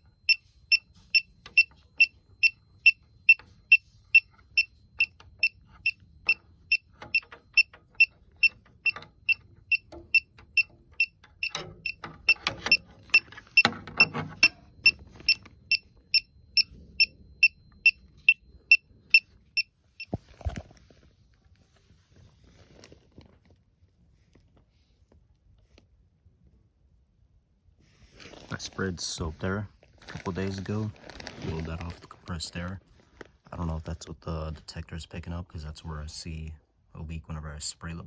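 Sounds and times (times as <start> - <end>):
short high beeps: 0.0 - 20.1
handling noise: 0.0 - 23.6.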